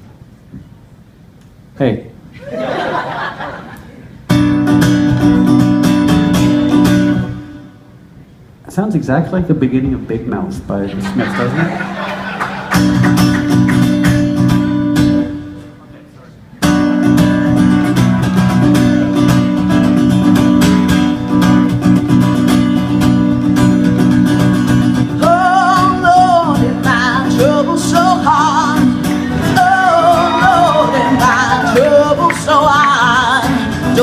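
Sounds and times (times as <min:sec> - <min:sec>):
acoustic guitar strumming: 0:04.2 - 0:08.1, 0:11.0 - 0:16.0, 0:16.6 - 0:34.0.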